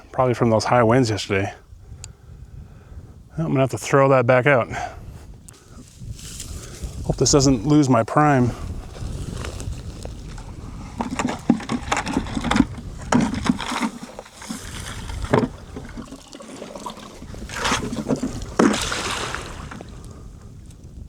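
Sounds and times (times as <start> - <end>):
water splashing: 12.0 - 20.1.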